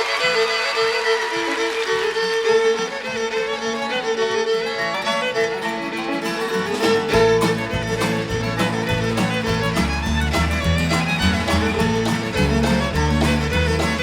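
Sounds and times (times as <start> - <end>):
fiddle melody: 0.0 - 14.0
upbeat country band: 0.0 - 14.0
bass: 6.6 - 14.0.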